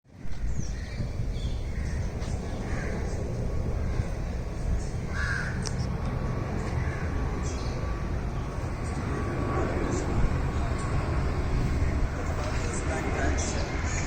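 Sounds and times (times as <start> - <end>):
steady low rumble: 0.1 - 14.0
harsh bird calls: 0.2 - 5.9.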